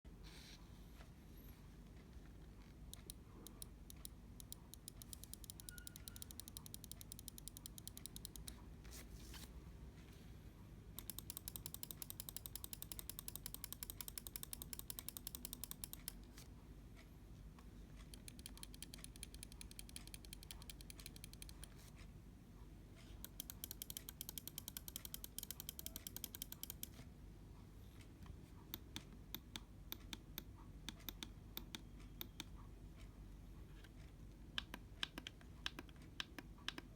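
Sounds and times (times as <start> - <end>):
computer mouse buttons clicking: 2.8 - 8.6, 11.0 - 16.5, 18.0 - 22.0, 23.1 - 27.1, 28.7 - 32.7, 33.8 - 36.9.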